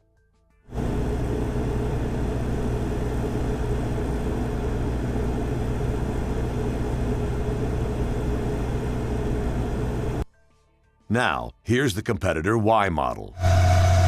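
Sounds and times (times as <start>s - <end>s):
generator engine hum: 0.7s - 10.2s
faint high drone: 13.3s - 14.0s.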